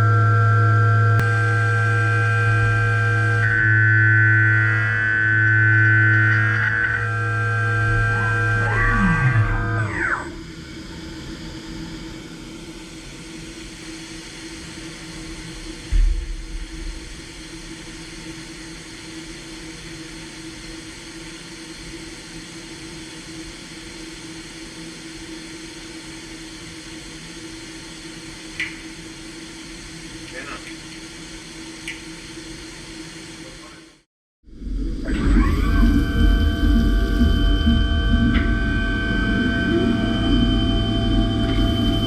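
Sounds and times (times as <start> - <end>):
machine humming steadily: 0.0 - 42.0
milling spindle winding down: 1.2 - 12.1, 34.8 - 42.0.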